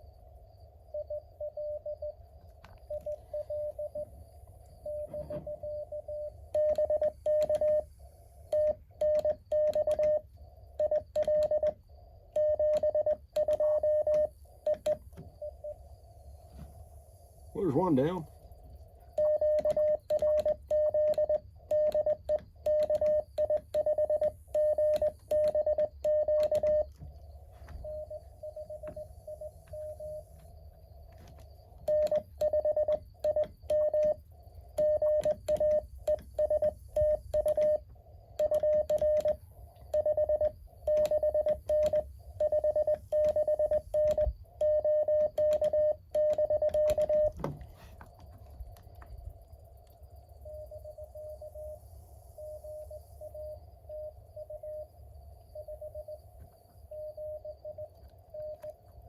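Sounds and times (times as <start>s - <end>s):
quieter incoming morse code: 0.7s - 15.9s, 17.5s - 18.5s, 19.1s - 49.1s, 50.4s - 51.8s, 52.4s - 59.0s
morse code tone: 0.9s - 2.2s, 2.8s - 4.2s, 4.8s - 15.8s, 17.6s - 18.3s, 19.2s - 30.4s, 31.7s - 34.2s, 34.8s - 48.0s, 56.9s - 58.8s.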